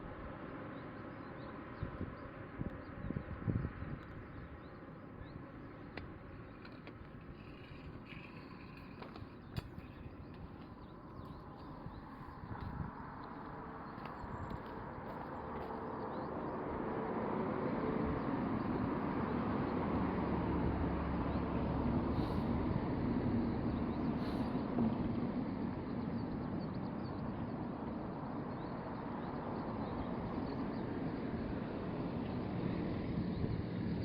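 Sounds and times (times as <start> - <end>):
steady low rumbling noise: 1.2 - 34.0.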